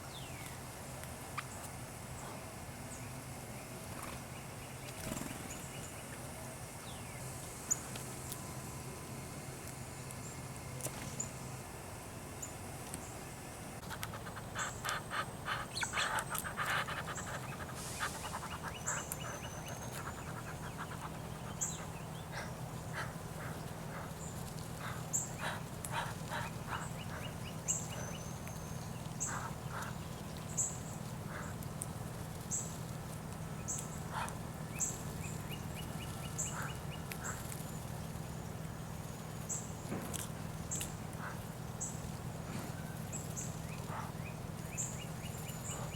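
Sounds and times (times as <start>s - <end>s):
small birds chirping: 0.0s - 0.6s, 13.8s - 45.9s
steady low hum: 0.0s - 45.9s
birds chattering rapidly: 13.8s - 45.9s.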